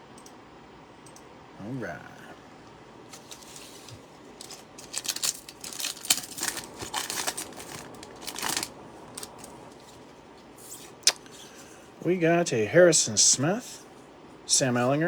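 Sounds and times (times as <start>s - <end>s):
plastic wrapper tearing and crinkling: 3.1s - 10.0s
crackling bursts: 3.1s - 10.1s.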